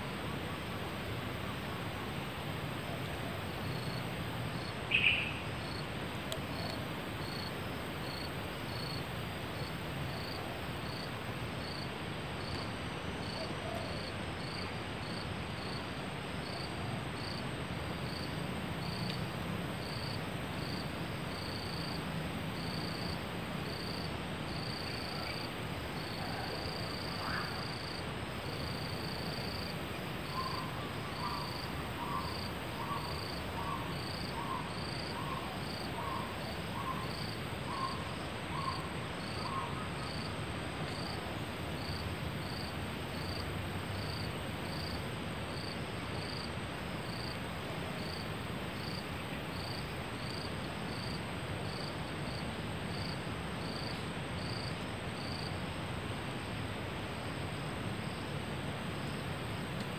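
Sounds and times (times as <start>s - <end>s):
cricket-like chirping: 2.6s - 55.6s
lower animal call: 4.9s - 5.5s, 30.3s - 40.1s.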